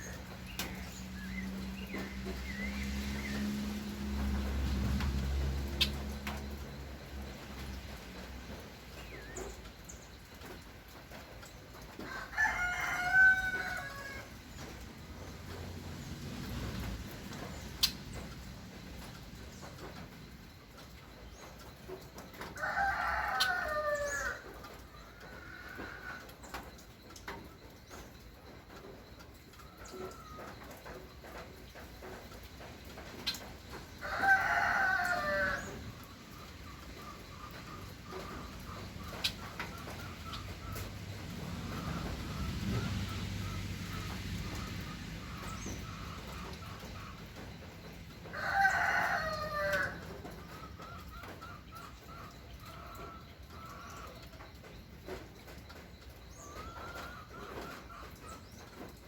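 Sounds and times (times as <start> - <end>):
rooster crowing: 12.0 - 14.4, 22.4 - 24.6, 33.8 - 38.8, 48.2 - 51.4.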